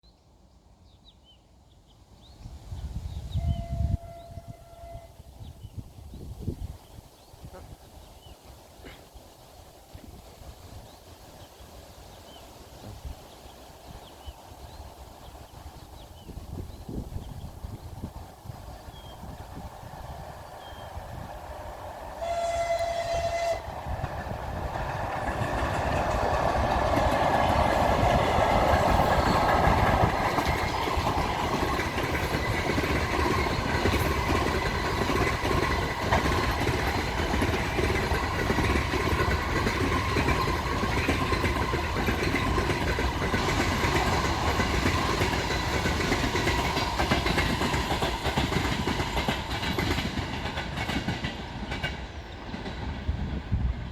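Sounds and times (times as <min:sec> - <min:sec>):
train horn: 0:03.3 - 0:05.3, 0:22.2 - 0:23.9
locomotive rushing past: 0:13.7 - 0:53.9
wheels clattering over rail joints: 0:23.9 - 0:53.0.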